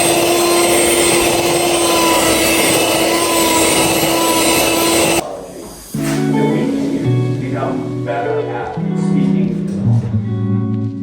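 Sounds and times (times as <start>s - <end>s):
kitchen appliance motor whirring: 0.0s - 5.2s.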